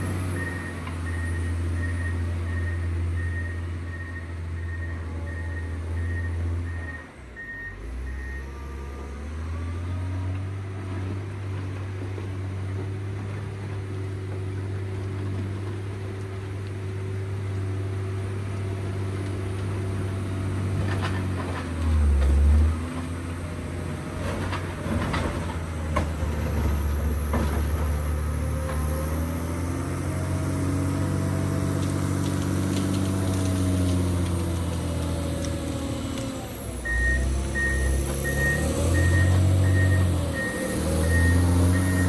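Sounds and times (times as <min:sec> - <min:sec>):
diesel engine running under load: 0:00.0 - 0:42.0
reversing alarm beeping: 0:00.2 - 0:08.6, 0:36.8 - 0:42.0.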